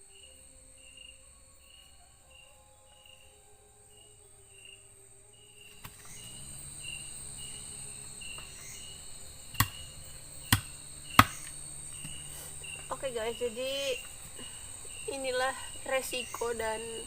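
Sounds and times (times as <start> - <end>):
night insects calling: 0.0 - 17.0
sharp loud knocks: 9.6 - 9.8, 10.5 - 12.2.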